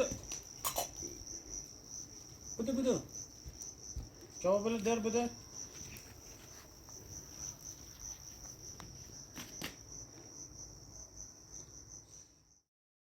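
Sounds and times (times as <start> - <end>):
crickets chirping: 0.0 - 12.7.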